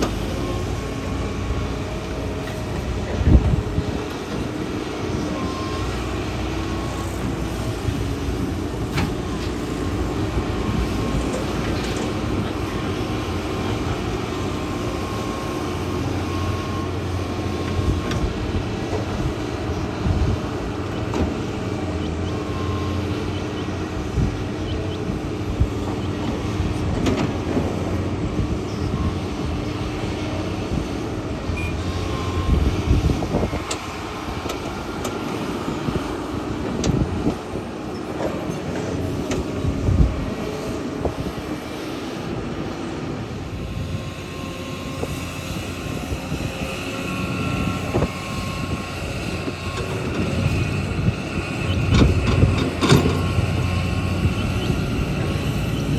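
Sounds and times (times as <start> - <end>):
excavator diesel engine running: 0.0 - 55.9
knocks and clanks: 51.7 - 53.8.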